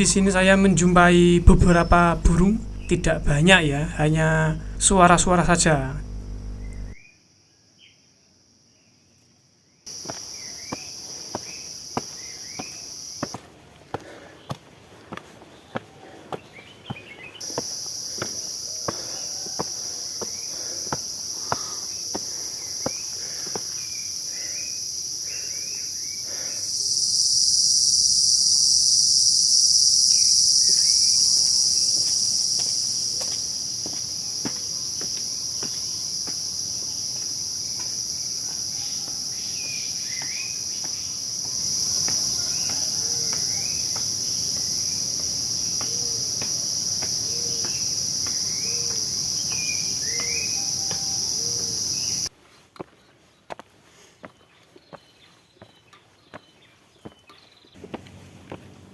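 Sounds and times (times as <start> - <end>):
high-pitched insect chorus: 0.0 - 7.0, 9.9 - 13.4, 17.4 - 52.3
bird chirps: 38.4 - 46.3, 47.2 - 52.3.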